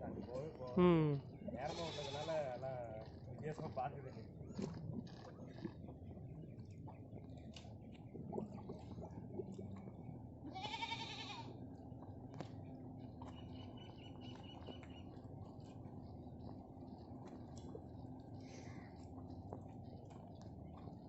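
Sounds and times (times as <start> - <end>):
goat bleating: 1.6 - 2.4, 10.5 - 11.5.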